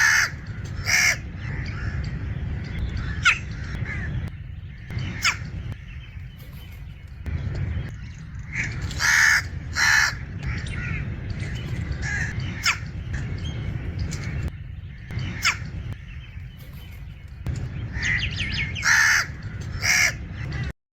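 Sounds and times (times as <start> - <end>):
crow cawing harshly: 0.0 - 2.1, 8.5 - 11.0, 12.0 - 12.9, 18.0 - 20.7
steady low rumble: 0.0 - 20.8.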